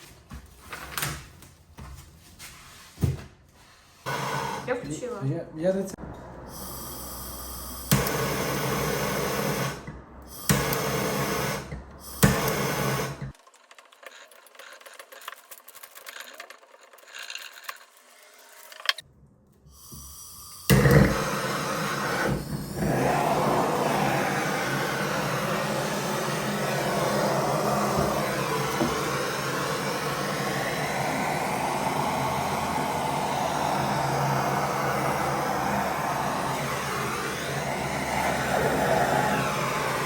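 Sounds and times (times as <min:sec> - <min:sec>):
electric power tool running: 0:04.0 - 0:05.0, 0:06.6 - 0:13.4, 0:20.0 - 0:40.0.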